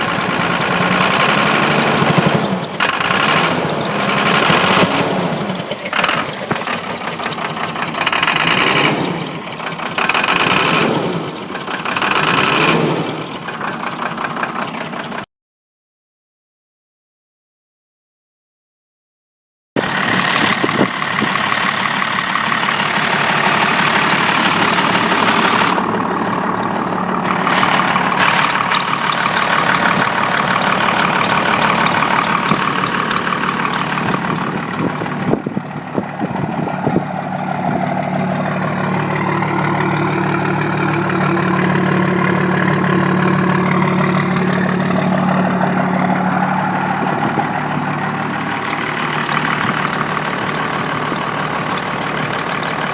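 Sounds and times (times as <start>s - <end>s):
diesel engine idling: 0.0s - 15.3s, 19.8s - 52.9s.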